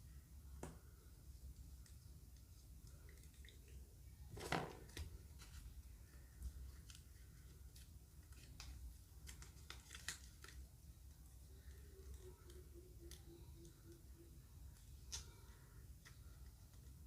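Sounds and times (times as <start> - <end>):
plastic wrapper crinkling: 7.8 - 10.6.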